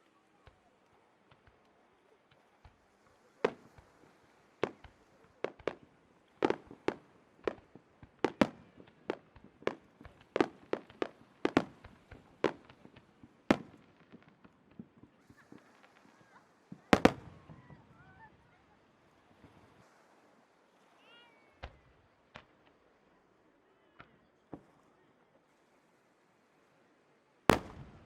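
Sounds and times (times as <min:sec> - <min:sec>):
fireworks bursting: 0:02.3 - 0:18.0, 0:27.5 - 0:28.0.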